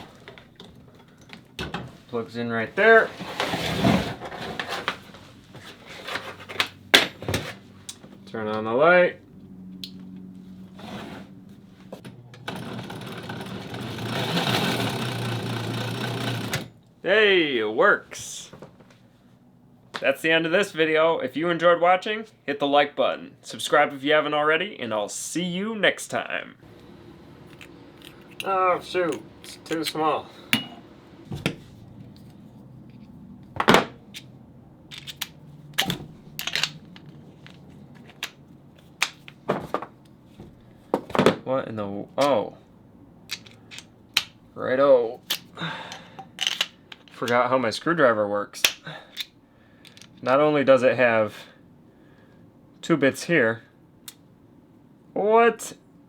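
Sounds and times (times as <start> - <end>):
sewing machine motor whirring: 12.4 - 16.7
screwdriver bits clicking and knocking: 34.9 - 37.1.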